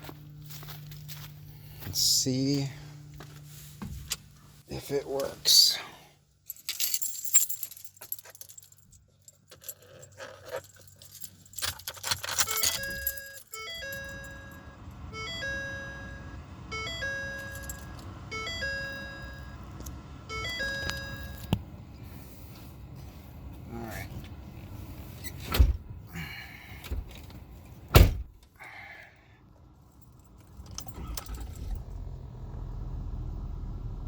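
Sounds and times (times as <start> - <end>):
keys jangling: 6.5 - 14.6, 17.2 - 21.6
truck engine rumble: 12.3 - 28.1, 29.7 - 34.0
dashboard warning chime: 12.4 - 21.6.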